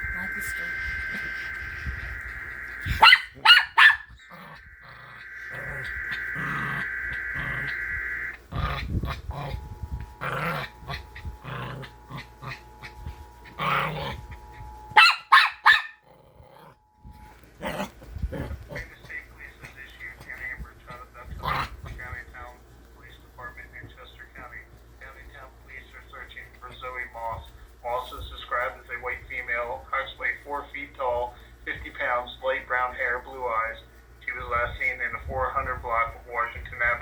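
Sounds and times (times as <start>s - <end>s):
two-tone attention signal: 0.0s - 15.5s
two-pitch data burst: 0.0s - 16.0s
dog barking: 2.8s - 4.2s, 15.0s - 16.0s.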